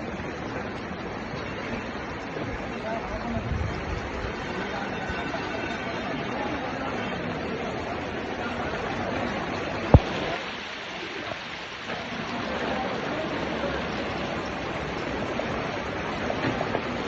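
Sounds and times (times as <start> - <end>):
heavy rain pouring: 0.0 - 17.0
sharp thump: 9.9 - 10.4.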